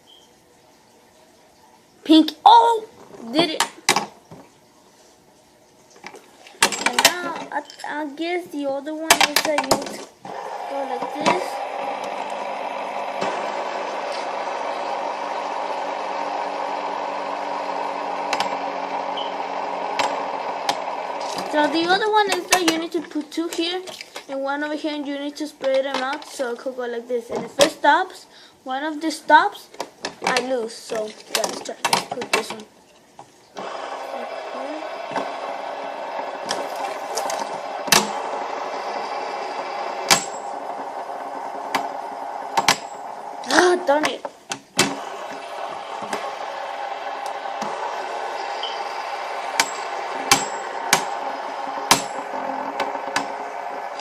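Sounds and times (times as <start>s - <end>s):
fidget spinners whirring: 6.0s - 28.2s, 33.5s - 54.0s.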